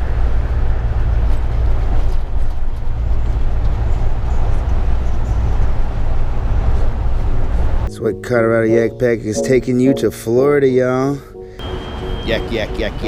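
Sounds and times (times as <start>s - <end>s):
vehicle rumble with hiss: 0.0s - 7.9s.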